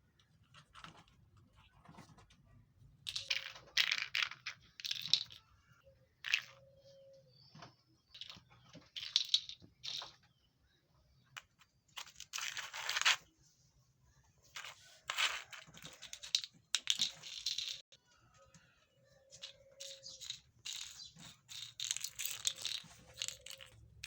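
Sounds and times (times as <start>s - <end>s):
crinkly toy rustling: 14.3s - 17.8s, 19.3s - 24.0s.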